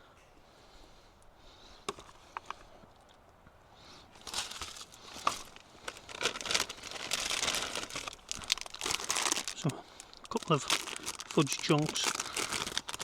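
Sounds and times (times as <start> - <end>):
plastic packet crinkling: 4.2 - 13.0.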